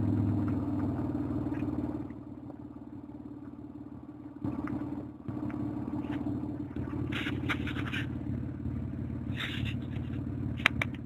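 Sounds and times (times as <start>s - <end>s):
car engine idling: 0.0s - 11.0s
scraping noises: 7.0s - 8.2s, 9.3s - 10.2s.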